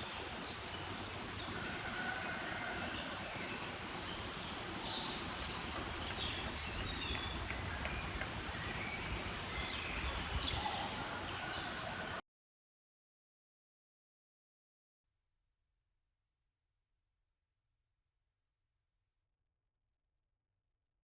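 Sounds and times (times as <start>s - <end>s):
birds chirping and calling: 4.9s - 12.1s.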